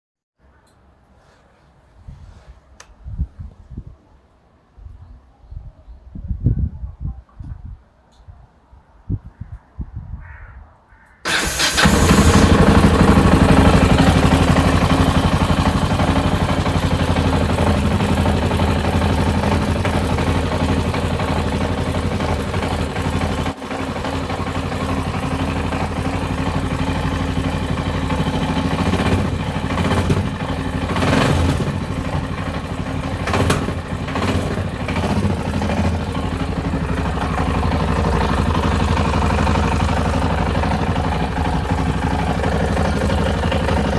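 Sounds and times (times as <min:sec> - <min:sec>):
motorcycle engine starting and idling: 0:11.2 - 0:43.9.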